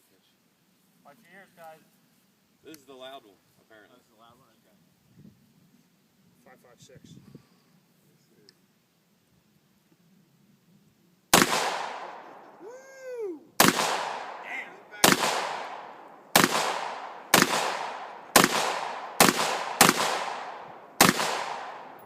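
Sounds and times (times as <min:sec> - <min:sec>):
rifle shots echoing: 0:11.3 - 0:12.6, 0:13.6 - 0:22.0.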